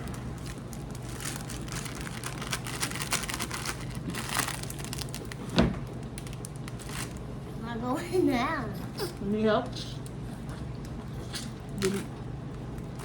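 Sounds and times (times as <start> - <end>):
packaging crinkling: 0.0 - 7.3.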